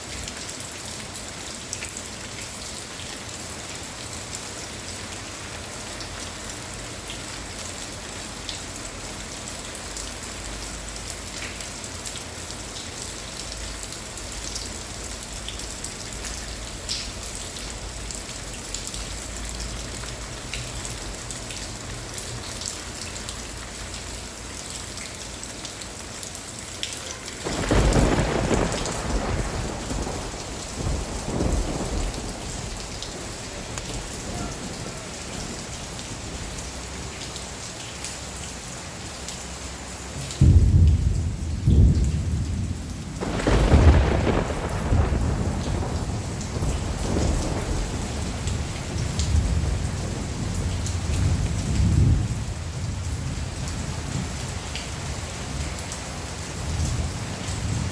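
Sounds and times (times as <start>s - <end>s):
steady rainfall: 0.0s - 57.9s
thunder rumbling: 27.4s - 36.5s, 40.4s - 54.4s.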